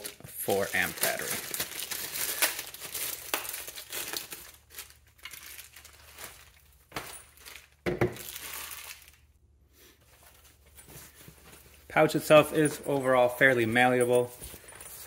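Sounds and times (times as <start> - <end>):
tools rustling in fabric case: 10.0 - 15.0.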